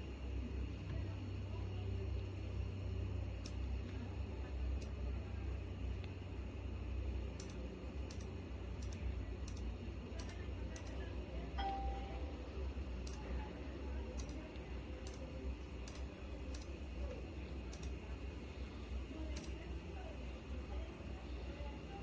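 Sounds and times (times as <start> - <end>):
steady low hum: 0.0 - 22.0
short ding: 11.6 - 12.4.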